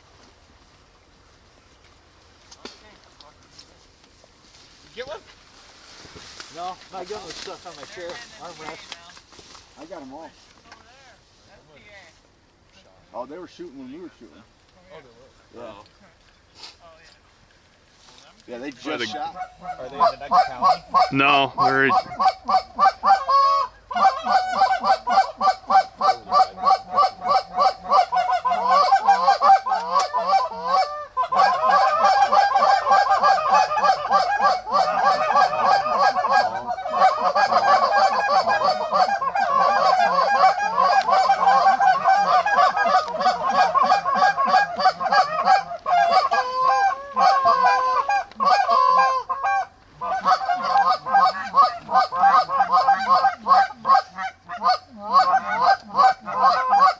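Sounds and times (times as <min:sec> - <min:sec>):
geese honking: 0:18.8 - 0:56.9.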